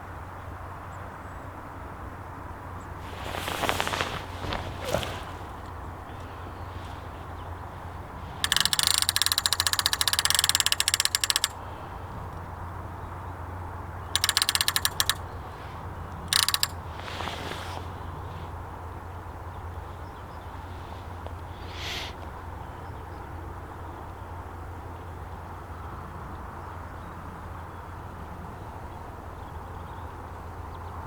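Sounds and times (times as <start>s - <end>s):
fishing reel ratchet clicking: 8.4s - 11.6s, 14.2s - 15.3s, 16.2s - 17.3s.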